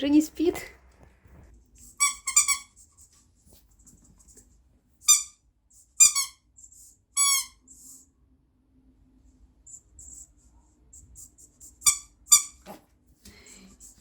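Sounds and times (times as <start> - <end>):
dog toy squeaking: 2.0 - 2.7, 5.1 - 5.4, 6.0 - 6.4, 7.2 - 7.6, 11.8 - 12.6.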